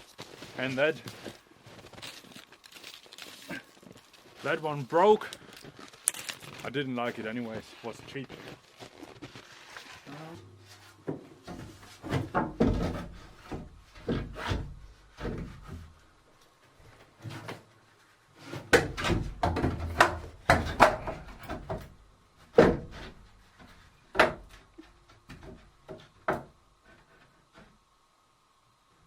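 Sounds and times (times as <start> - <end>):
wooden knocks and clunks: 10.8 - 16.1, 18.4 - 27.8.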